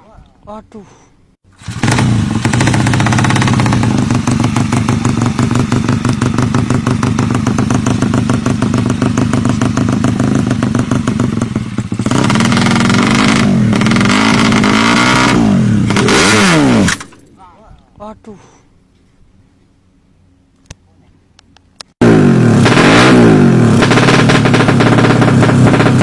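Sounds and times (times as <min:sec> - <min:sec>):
racing motorcycle engine revving: 0:01.6 - 0:17.0, 0:22.0 - 0:26.0.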